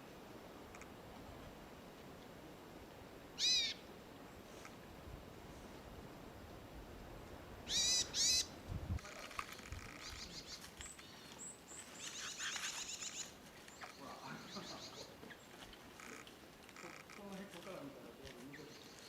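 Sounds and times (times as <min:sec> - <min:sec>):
birds chirping and trilling: 0:03.4 - 0:03.8, 0:07.7 - 0:08.5, 0:09.5 - 0:16.2, 0:18.5 - 0:19.0
loud short bird calls: 0:03.4 - 0:03.8, 0:07.7 - 0:08.5, 0:11.9 - 0:16.2.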